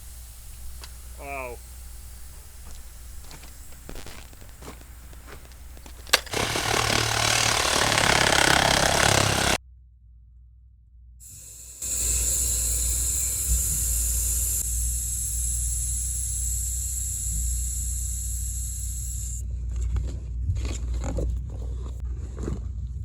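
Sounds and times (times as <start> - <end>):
air hissing from pipe: 0.0 - 9.6, 11.3 - 19.4
excavator engine running: 0.0 - 9.6
sharp click: 2.4 - 7.8.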